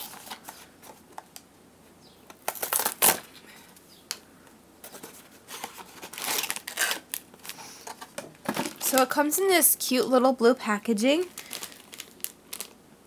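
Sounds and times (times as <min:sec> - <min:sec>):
snack packaging crinkling: 0:02.3 - 0:03.4, 0:05.0 - 0:09.2, 0:11.1 - 0:12.8.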